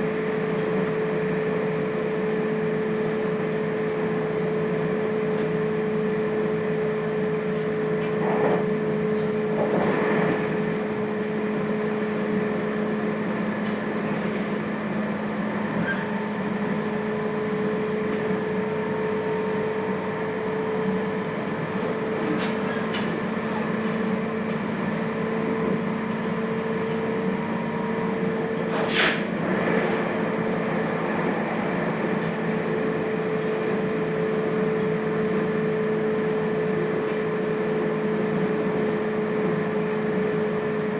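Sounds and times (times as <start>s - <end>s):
train electrical hum: 0.0s - 40.9s
wheel and rail rumble: 20.3s - 35.0s.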